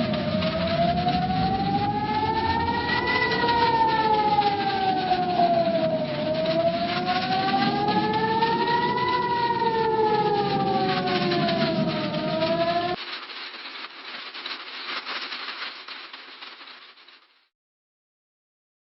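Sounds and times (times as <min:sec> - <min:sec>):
emergency alert siren tone: 0:00.0 - 0:13.0.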